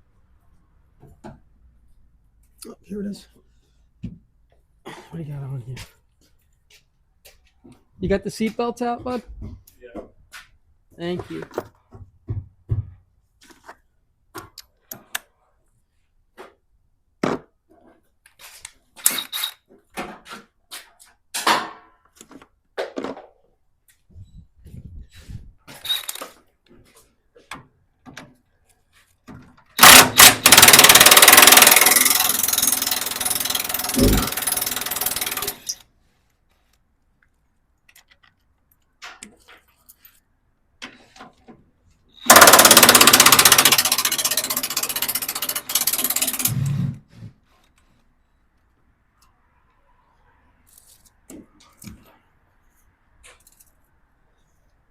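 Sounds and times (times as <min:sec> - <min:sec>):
impact wrench running: 0:29.8 - 0:35.8, 0:42.2 - 0:46.9
tools and metal parts clinking: 0:29.8 - 0:35.8.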